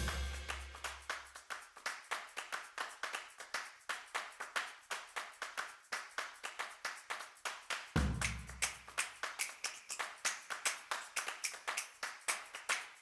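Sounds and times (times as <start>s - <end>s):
clap-like percussion beat: 0.0s - 13.0s.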